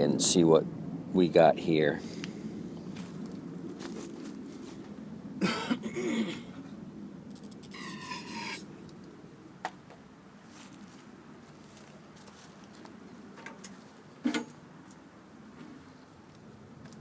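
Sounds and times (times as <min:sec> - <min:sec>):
man coughing: 0:05.4 - 0:06.6.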